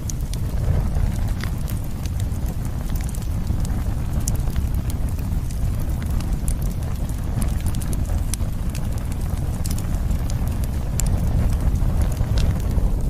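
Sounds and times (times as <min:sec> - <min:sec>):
campfire crackling and popping: 0:00.0 - 0:13.0
low fire rumble: 0:00.0 - 0:13.0.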